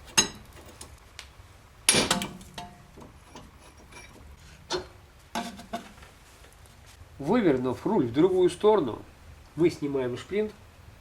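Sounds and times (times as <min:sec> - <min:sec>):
metal-on-metal knocks and clinks: 0:01.9 - 0:06.0.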